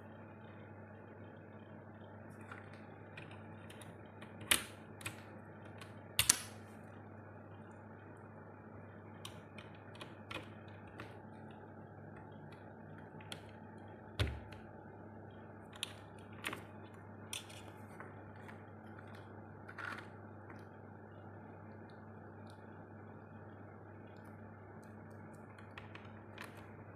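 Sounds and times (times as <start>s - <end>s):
low steady hum: 0.0s - 26.9s.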